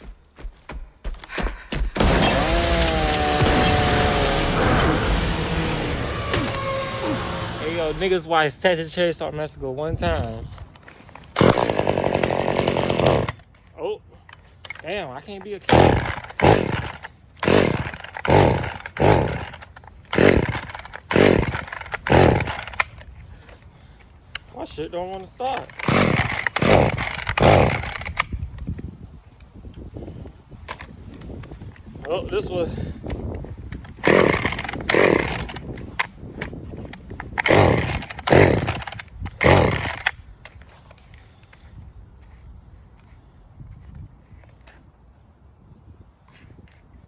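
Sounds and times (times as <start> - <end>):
chainsaw recoil starter yanks: 2.0 - 8.2, 11.2 - 13.5, 14.3 - 23.6, 25.2 - 28.4, 33.8 - 41.7.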